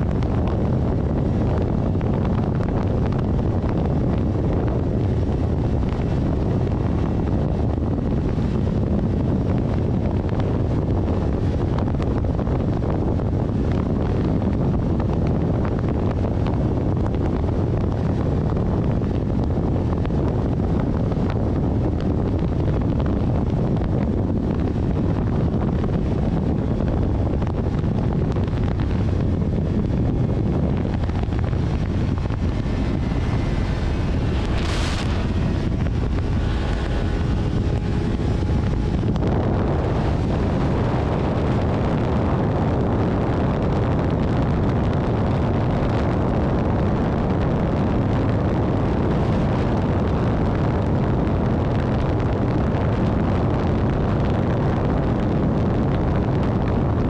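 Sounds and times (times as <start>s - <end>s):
vehicle on wet road: 0.0s - 57.0s.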